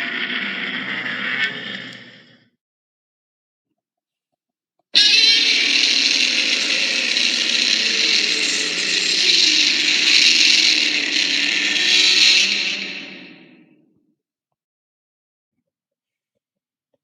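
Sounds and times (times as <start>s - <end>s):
harsh hissing monster screech: 5.0s - 13.7s.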